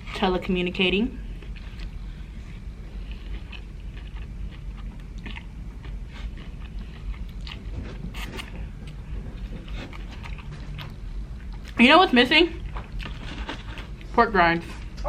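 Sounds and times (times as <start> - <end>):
person chewing crunchy food: 1.3 - 11.8, 12.6 - 14.1.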